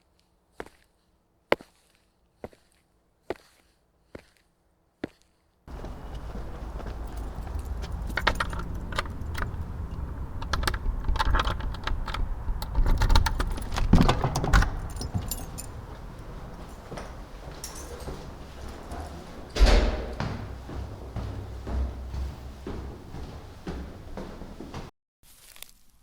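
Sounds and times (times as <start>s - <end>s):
crisp footsteps: 0.5s - 9.8s, 13.2s - 24.9s
steady low rumble: 5.7s - 24.8s.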